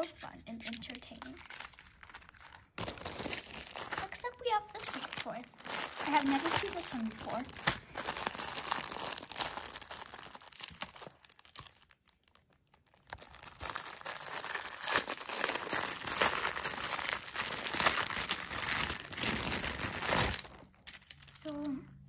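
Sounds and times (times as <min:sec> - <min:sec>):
packaging crinkling and tearing: 0:00.6 - 0:21.3.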